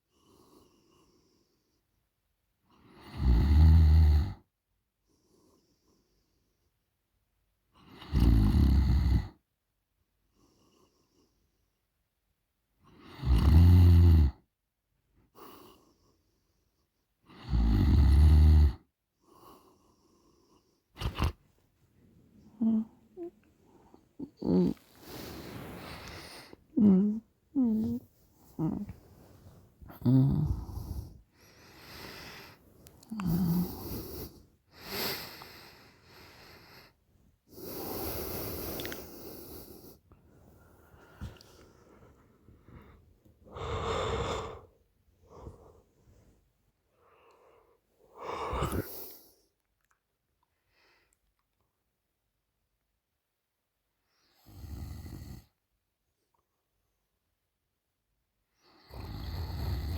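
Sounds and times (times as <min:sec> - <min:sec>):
woman snoring loudly: 0:08.0 - 0:09.3, 0:13.2 - 0:14.4, 0:17.4 - 0:18.8, 0:22.6 - 0:23.3, 0:24.2 - 0:29.0, 0:29.9 - 0:32.5, 0:33.1 - 0:35.6, 0:43.5 - 0:44.7, 0:54.5 - 0:55.5, 0:58.9 - 0:59.9
faint breaths: 0:19.2 - 0:49.5.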